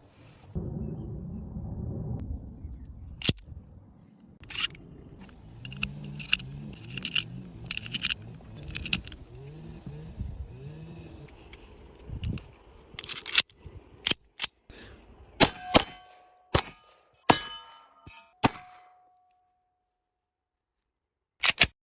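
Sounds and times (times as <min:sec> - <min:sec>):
low wavering hum: 0:00.0 - 0:14.1
pistol clicks and rattles: 0:04.4 - 0:09.3, 0:11.3 - 0:14.6, 0:21.4 - 0:21.7.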